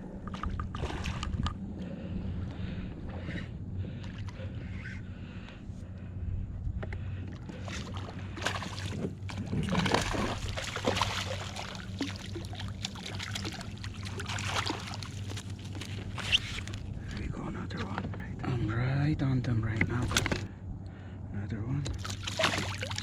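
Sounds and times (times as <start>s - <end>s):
low hum: 0.0s - 23.0s
water splashing: 7.7s - 16.8s, 21.9s - 23.0s.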